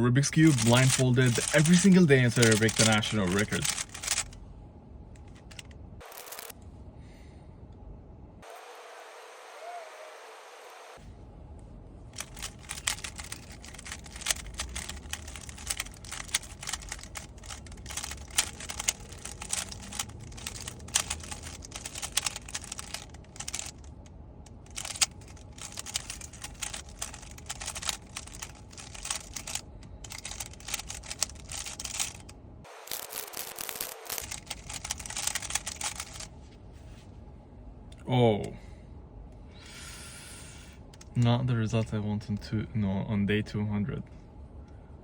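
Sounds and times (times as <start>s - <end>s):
puzzle cube plastic clicks: 0.4s - 4.4s, 12.2s - 24.0s, 24.6s - 32.3s, 32.9s - 36.3s.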